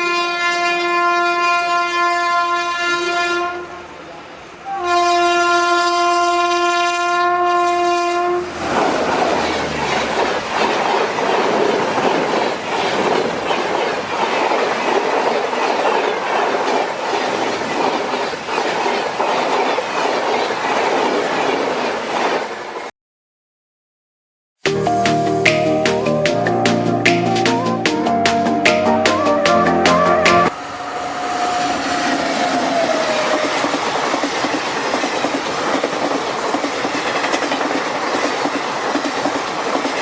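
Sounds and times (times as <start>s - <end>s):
train horn blast: 0.0s - 4.0s, 4.6s - 8.6s, 30.4s - 33.3s
train clattering along track: 8.5s - 22.8s, 30.5s - 40.0s.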